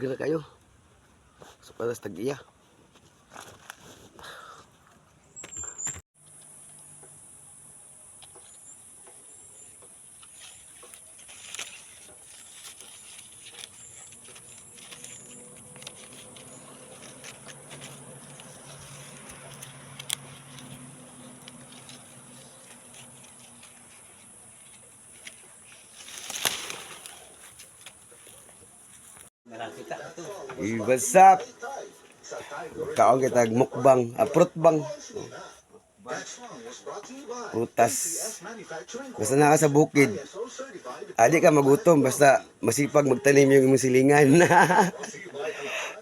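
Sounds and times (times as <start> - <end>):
rustles: 1.0 - 7.5, 8.1 - 29.3
insects droning: 6.2 - 28.9.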